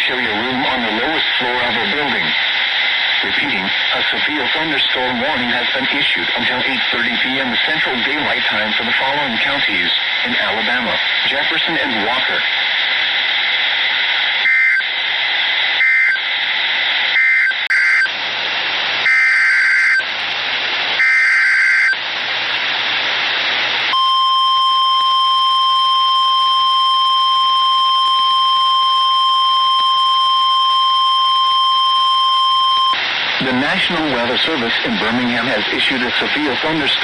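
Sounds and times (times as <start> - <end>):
radio static: 0.0 - 18.2, 19.0 - 20.2, 20.8 - 22.7, 23.4 - 37.0
steady warning alarm tone: 14.4 - 14.9, 15.8 - 16.2, 17.2 - 18.1, 19.0 - 20.1, 21.0 - 22.0, 23.9 - 33.0.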